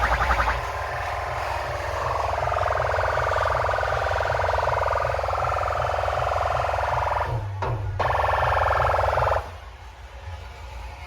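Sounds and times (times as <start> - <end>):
steady bass beat: 0.0 - 7.2
pulsing siren-like synth: 0.0 - 7.4, 8.0 - 9.6.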